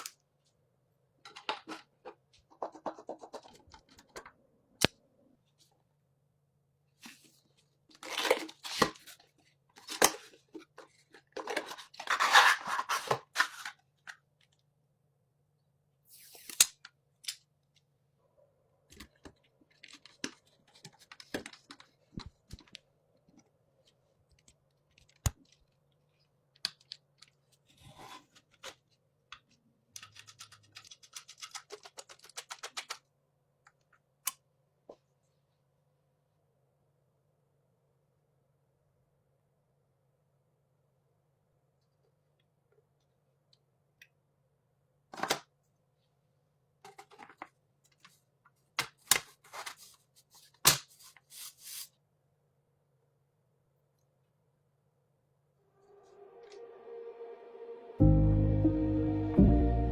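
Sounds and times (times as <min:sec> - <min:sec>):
computer parts rustling and scraping: 0:01.2 - 0:04.4, 0:07.0 - 0:14.2, 0:18.9 - 0:22.8, 0:30.0 - 0:33.0, 0:46.8 - 0:52.0.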